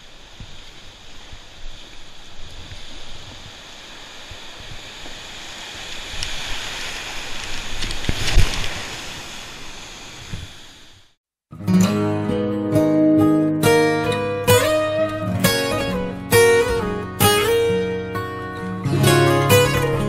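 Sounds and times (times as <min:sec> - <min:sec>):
wind buffeting the microphone: 0:00.0 - 0:11.0
water: 0:00.0 - 0:11.2.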